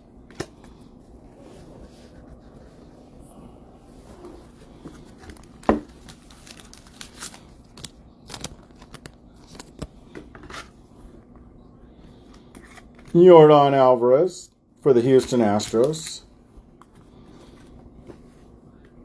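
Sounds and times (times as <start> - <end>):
trading cards and wrappers handled: 4.6 - 10.7, 15.0 - 16.3.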